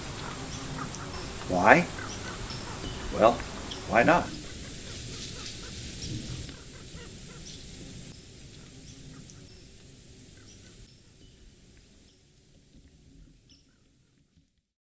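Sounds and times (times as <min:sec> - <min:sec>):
short bird calls: 0:00.0 - 0:09.7
background hiss: 0:00.0 - 0:14.7.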